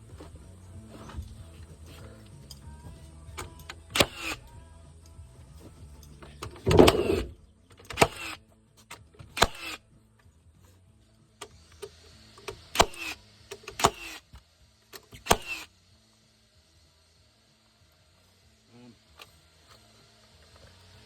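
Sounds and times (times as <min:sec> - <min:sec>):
hammer driving nails into wood: 0:03.4 - 0:04.5, 0:06.4 - 0:08.4, 0:09.3 - 0:09.8, 0:12.4 - 0:14.3, 0:15.0 - 0:15.7.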